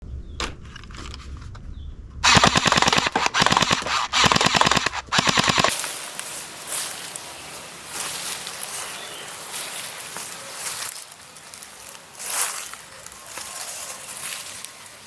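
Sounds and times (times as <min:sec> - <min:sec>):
rapid automatic gunfire: 0:02.2 - 0:05.7
steady background hiss: 0:05.7 - 0:15.0.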